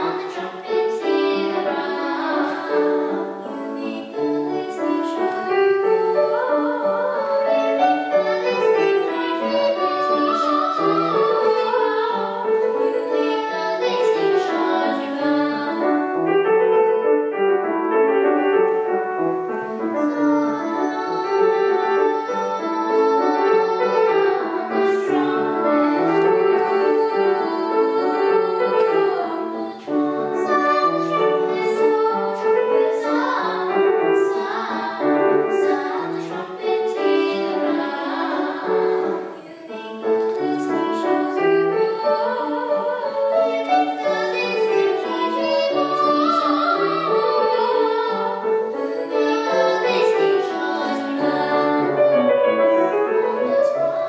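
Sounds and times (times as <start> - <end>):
piano chords: 0.0 - 54.0.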